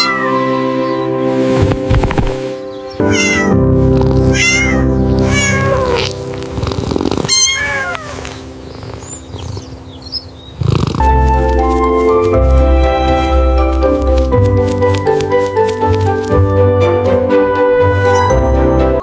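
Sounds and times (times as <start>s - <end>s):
kitten meowing: 0.0s - 0.8s, 3.0s - 8.4s
background music: 0.0s - 19.0s.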